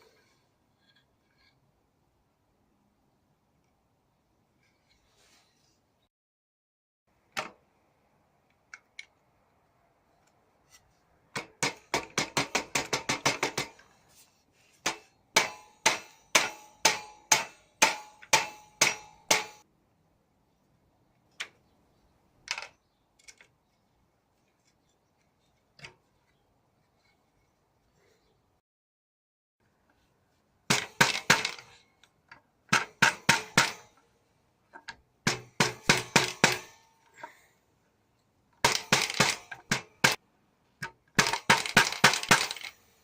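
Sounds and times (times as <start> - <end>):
hammer striking metal: 14.8 - 19.6, 30.7 - 31.7, 32.7 - 34.0, 35.3 - 37.0.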